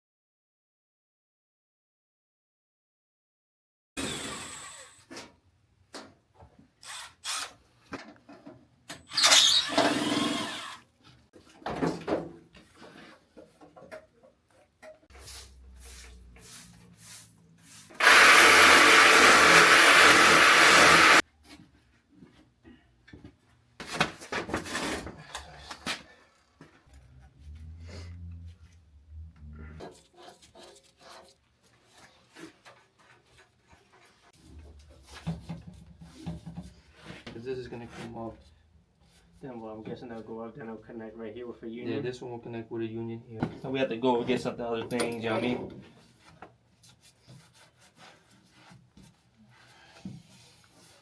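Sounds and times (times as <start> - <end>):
power tool running: 9.2 - 10.8, 18.0 - 21.2.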